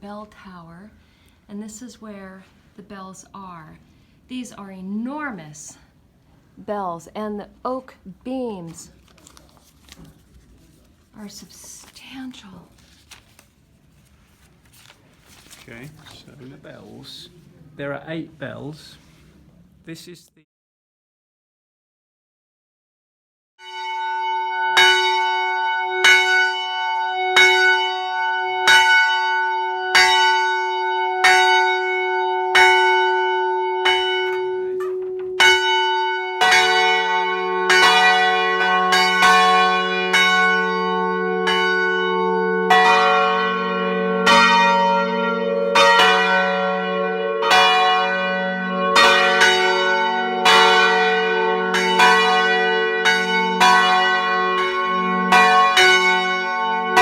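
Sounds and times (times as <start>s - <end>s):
church bell striking: 23.6s - 57.0s
deeper bells ringing: 23.6s - 57.0s.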